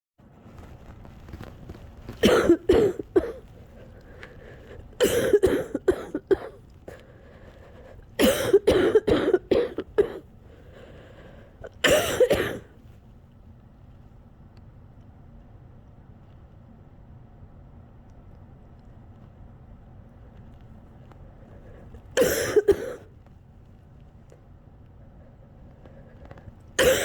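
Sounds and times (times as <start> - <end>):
person coughing hard: 2.2 - 3.5, 5.0 - 7.0, 8.2 - 10.3, 11.6 - 12.7, 22.2 - 23.1, 26.8 - 27.0.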